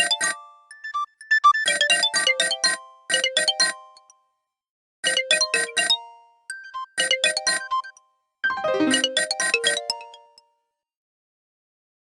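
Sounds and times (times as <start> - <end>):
ringtone of bell-like notes: 6.5 - 10.5.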